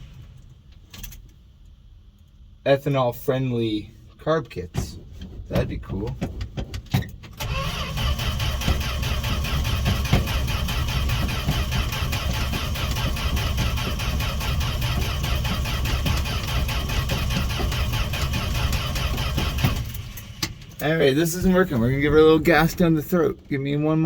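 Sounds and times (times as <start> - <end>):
starter cranking engine: 7.4 - 22.6.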